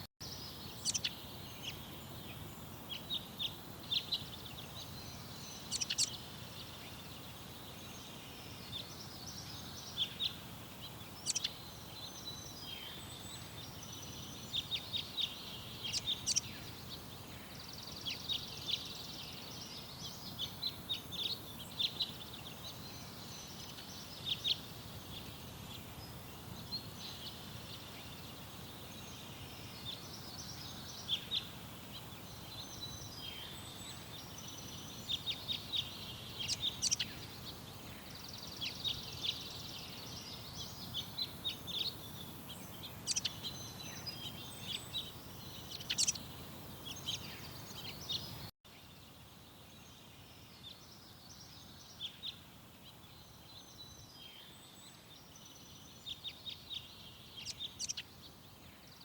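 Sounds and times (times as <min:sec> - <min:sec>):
songbirds chirping and singing: 0:00.0 - 0:59.0
steady background hiss: 0:00.0 - 0:59.0.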